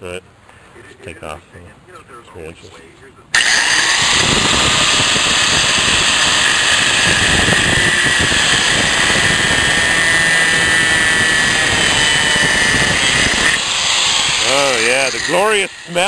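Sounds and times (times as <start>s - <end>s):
power saw whining: 3.4s - 16.0s.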